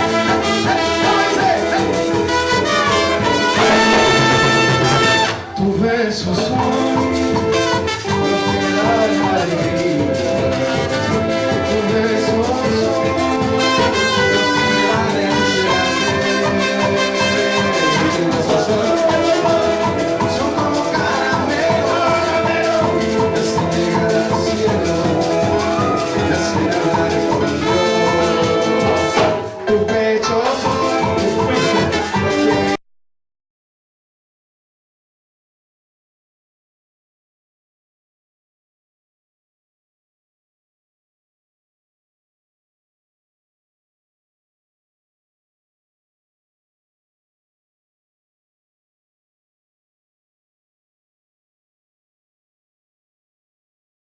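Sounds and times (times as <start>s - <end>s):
brass section chords: 0.0s - 32.8s
percussion beat: 0.0s - 32.8s.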